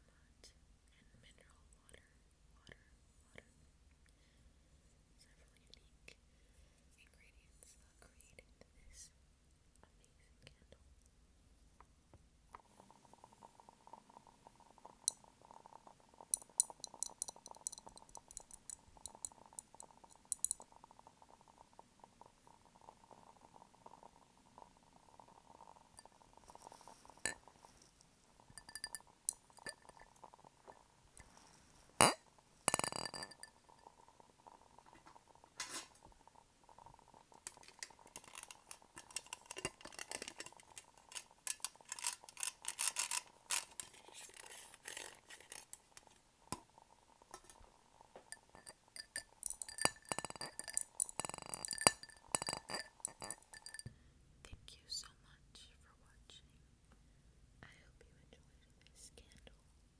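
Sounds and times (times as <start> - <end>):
tapping on glass jars: 16.2 - 20.7, 28.4 - 30.3, 32.0 - 34.0, 37.4 - 46.7, 48.2 - 54.0.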